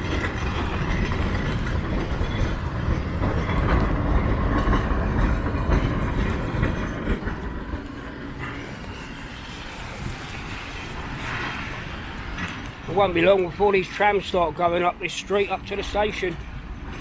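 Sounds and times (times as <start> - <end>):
heavy vehicle passing on wet street: 7.4 - 15.6.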